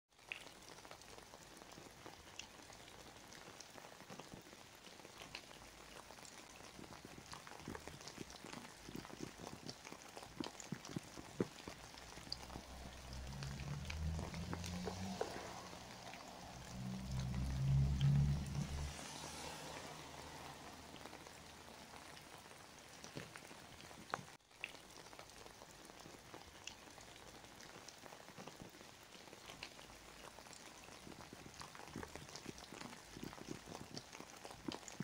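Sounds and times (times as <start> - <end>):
rain falling: 0.1 - 35.0
raindrop hits: 0.2 - 35.0
low rumble: 11.8 - 21.0.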